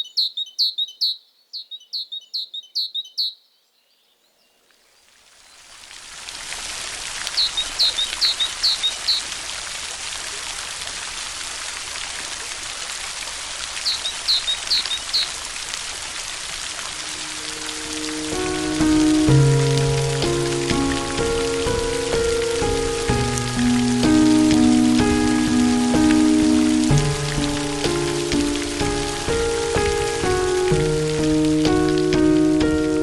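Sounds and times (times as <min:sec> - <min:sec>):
small bird chirping: 0:00.0 - 0:04.7, 0:07.3 - 0:09.3, 0:13.8 - 0:15.5
rain hiss: 0:04.8 - 0:33.0.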